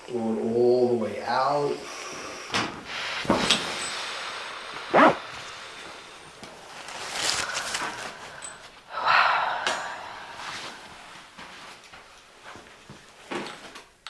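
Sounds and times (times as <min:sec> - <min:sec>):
joint pop: 0:05.0 - 0:05.2.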